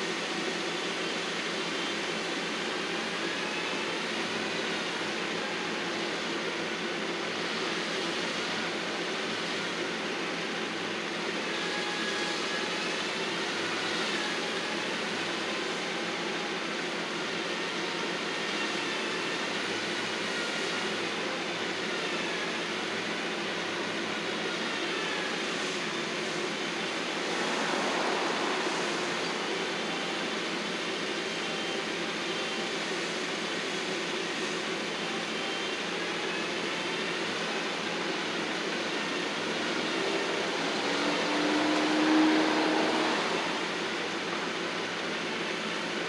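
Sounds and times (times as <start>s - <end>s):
heavy machinery engine running: 22.9s - 32.9s
faint wavering whine: 23.8s - 46.0s.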